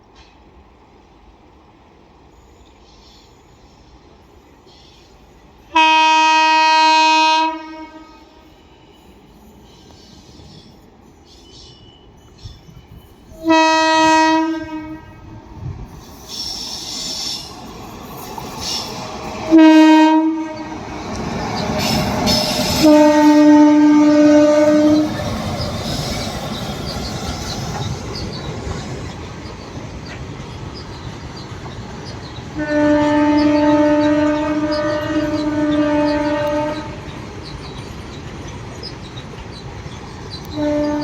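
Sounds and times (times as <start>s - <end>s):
train rumble: 0.0s - 41.0s
locomotive horn blasts: 5.7s - 8.4s, 13.3s - 15.4s, 19.5s - 20.8s, 22.6s - 25.2s, 32.6s - 37.0s, 40.5s - 41.0s
wheels clacking over rail joints: 16.2s - 41.0s.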